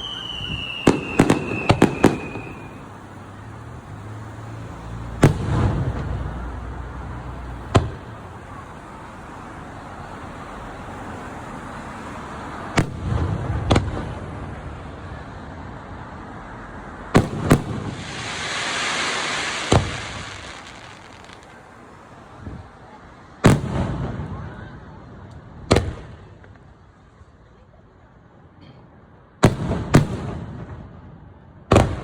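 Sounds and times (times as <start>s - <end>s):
firework shells bursting: 0.0s - 3.6s, 17.2s - 21.7s
hissing crackle: 17.6s - 22.4s.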